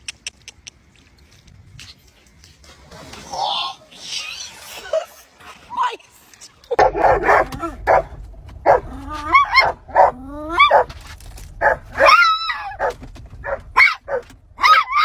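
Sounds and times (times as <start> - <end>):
dog making pitched calls: 11.6 - 15.0.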